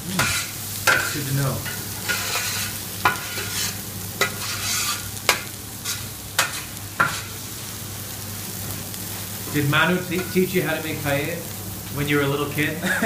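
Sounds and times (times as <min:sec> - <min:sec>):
onions and beans sizzling in pan: 0:00.0 - 0:13.0
utensil scraping a pan: 0:00.2 - 0:07.4.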